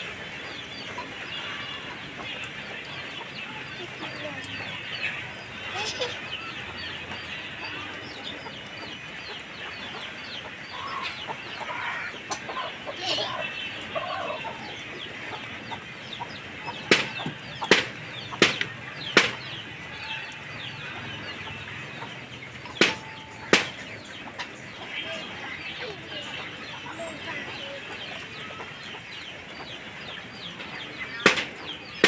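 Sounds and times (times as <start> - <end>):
chickens clucking: 0.0 - 32.0
sharp knocks: 16.8 - 19.6, 22.6 - 23.9, 31.2 - 32.0.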